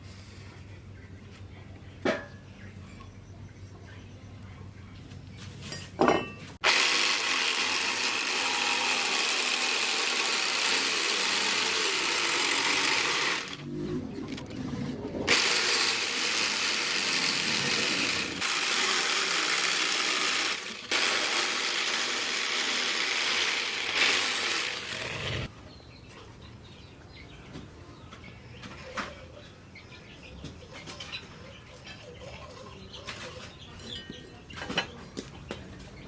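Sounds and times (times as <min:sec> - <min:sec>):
power grinder on steel: 0:06.6 - 0:14.4, 0:15.3 - 0:25.5.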